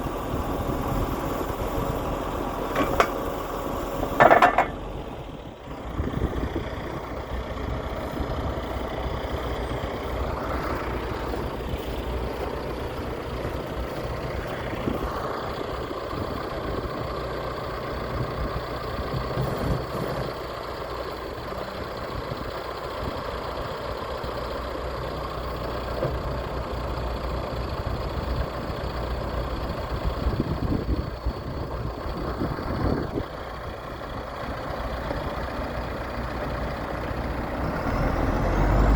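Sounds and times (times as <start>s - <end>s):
backhoe diesel engine running: 0.0s - 38.9s.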